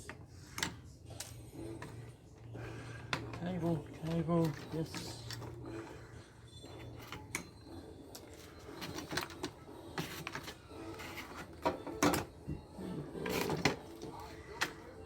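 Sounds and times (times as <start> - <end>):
hand tools and metal parts clicking: 3.1 - 5.7.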